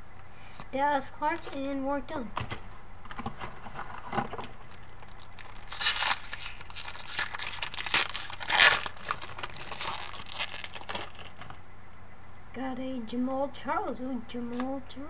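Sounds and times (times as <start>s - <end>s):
wrapper tearing and crinkling: 3.7s - 11.6s.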